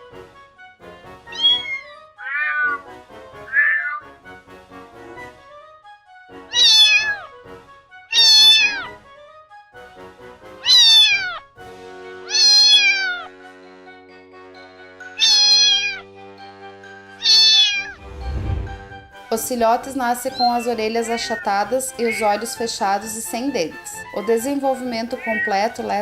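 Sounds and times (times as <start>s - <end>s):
soft background music: 0.0s - 26.0s
cat meowing: 1.3s - 2.8s, 3.4s - 4.1s, 6.5s - 7.3s, 8.1s - 9.0s, 10.6s - 11.5s, 12.3s - 13.3s, 15.1s - 16.0s, 17.2s - 18.0s, 20.3s - 22.6s, 25.1s - 25.8s.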